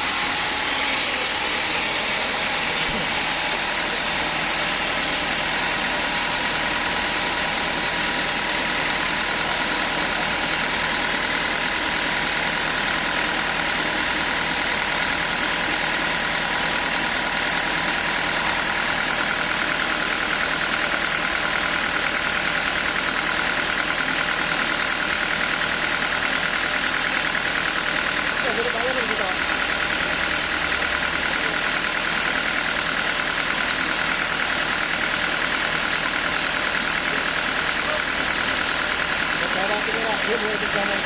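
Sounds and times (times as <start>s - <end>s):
high mechanical whine: 0.0s - 21.0s
sawmill machinery drone: 0.0s - 41.0s.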